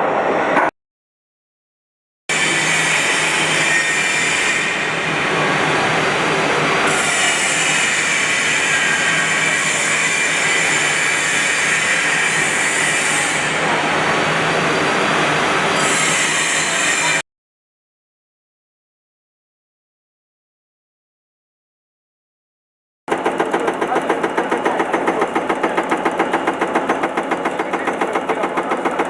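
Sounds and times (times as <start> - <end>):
heavy industrial machinery: 23.1 - 29.0.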